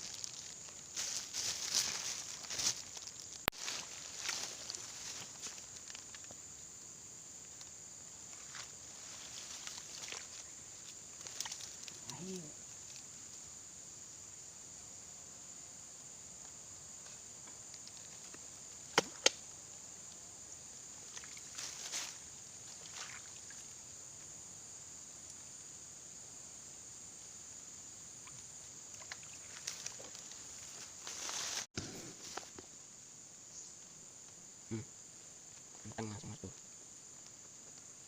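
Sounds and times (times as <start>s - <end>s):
rustling handling noises: 0.0s - 6.0s
crickets and insects chirping: 0.0s - 38.0s.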